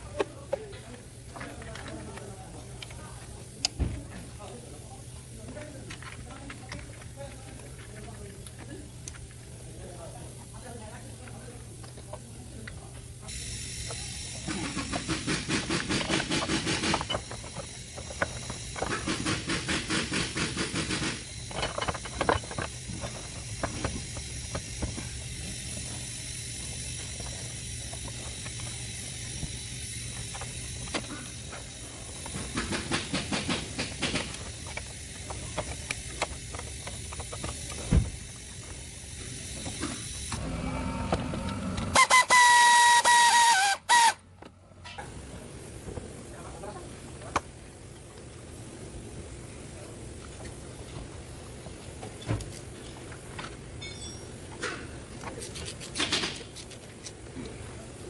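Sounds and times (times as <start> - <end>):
rapid mechanical clicking: 0.0 - 44.2
steady hiss: 0.0 - 58.0.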